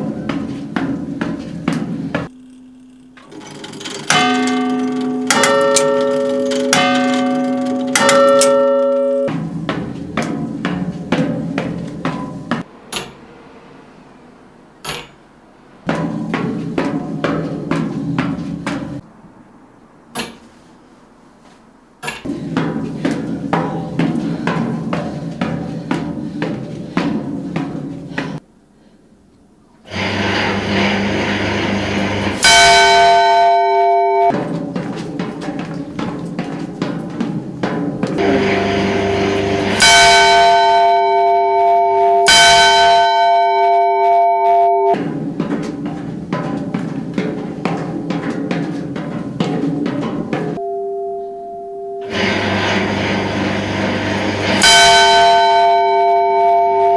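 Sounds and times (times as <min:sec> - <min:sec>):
sustained bell-like tones: 0:02.3 - 0:09.7, 0:32.4 - 0:34.4, 0:38.2 - 0:45.0, 0:50.6 - 0:56.9.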